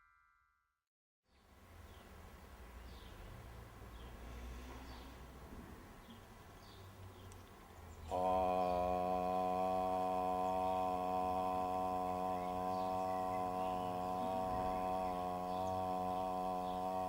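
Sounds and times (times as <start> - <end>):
person chanting low note: 8.1 - 17.0.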